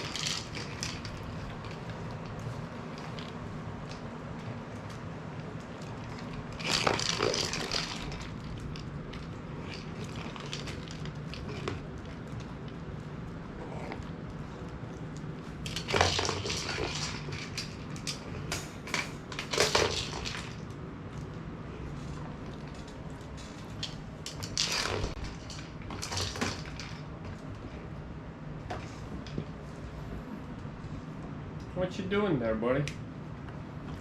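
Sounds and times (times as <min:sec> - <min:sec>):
toy ball rattling with kibble: 0:00.0 - 0:04.0, 0:05.8 - 0:12.7, 0:15.6 - 0:20.7
dog crunching food: 0:00.0 - 0:21.3.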